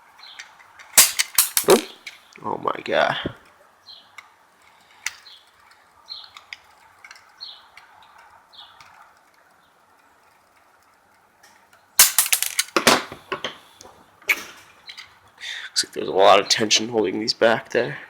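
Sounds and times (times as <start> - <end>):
loud clattering: 1.0 - 1.9, 12.0 - 13.2
small metal parts clicking: 1.0 - 2.0, 12.0 - 13.1.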